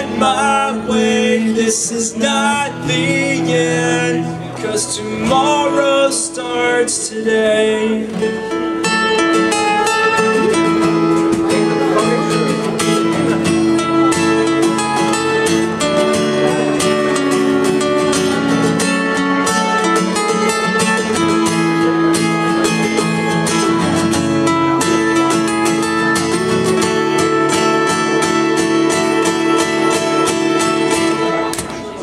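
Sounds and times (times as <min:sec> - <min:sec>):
acoustic guitar strumming: 0:00.0 - 0:32.0.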